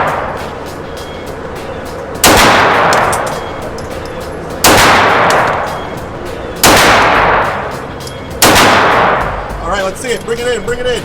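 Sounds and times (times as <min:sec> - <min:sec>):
pistol shots echoing: 0:02.2 - 0:05.9, 0:06.6 - 0:07.8, 0:08.4 - 0:09.4.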